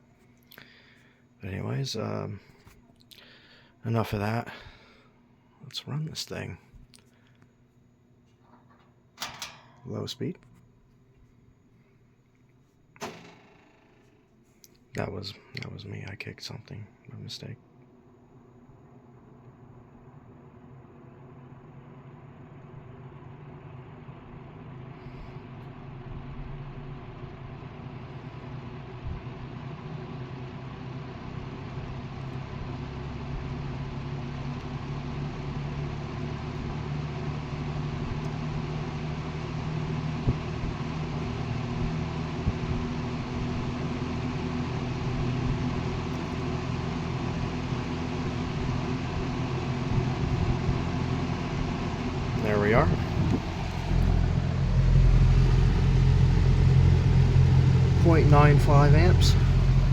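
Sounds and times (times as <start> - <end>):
fan motor hum: 17.7 - 59.9
rush of air from fan: 48.2 - 59.9.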